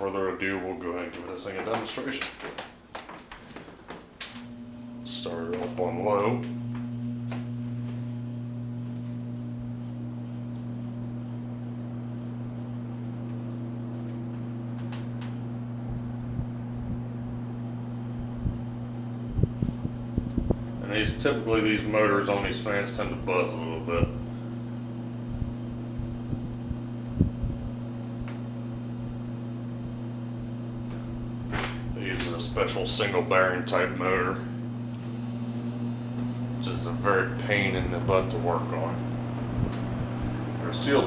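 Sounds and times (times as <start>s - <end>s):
box fan motor humming: 0.0s - 41.0s
soft low thumps: 15.8s - 21.7s, 25.2s - 28.9s, 39.0s - 40.6s.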